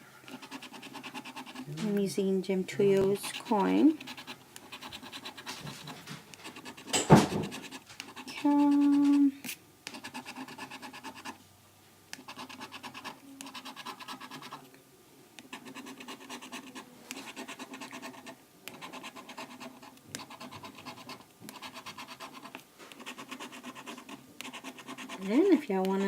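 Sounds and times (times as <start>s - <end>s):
coin scratching ticket: 3.1s - 9.2s, 15.5s - 26.0s.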